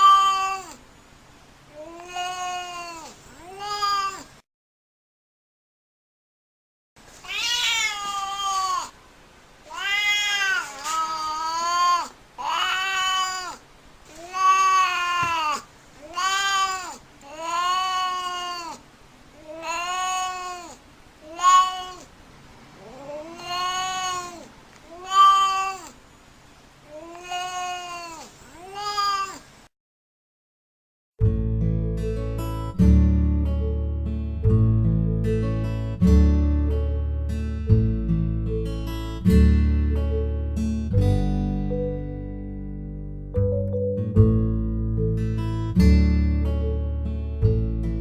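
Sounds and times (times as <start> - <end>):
cat meowing: 0.0 - 0.8, 7.2 - 8.9, 9.6 - 13.6, 14.2 - 18.8, 19.4 - 22.1, 22.8 - 26.0, 26.9 - 29.4.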